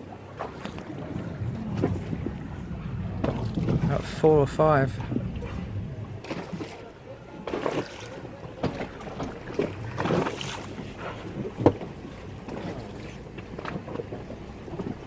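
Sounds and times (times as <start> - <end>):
water splashing against boat hull: 0.0 - 15.0
wind buffeting microphone: 0.0 - 15.0.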